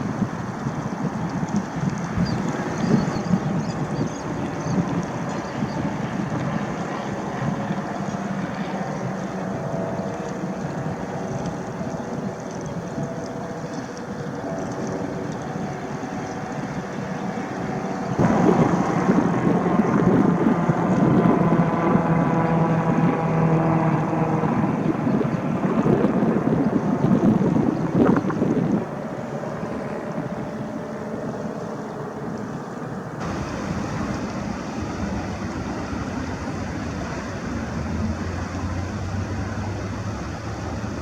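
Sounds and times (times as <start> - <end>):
mechanical drone: 0.0 - 41.0
wind noise on microphone: 0.0 - 41.0.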